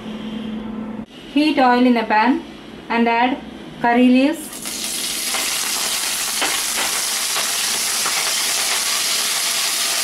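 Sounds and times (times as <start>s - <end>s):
leaves sizzling in hot oil: 4.5s - 10.0s.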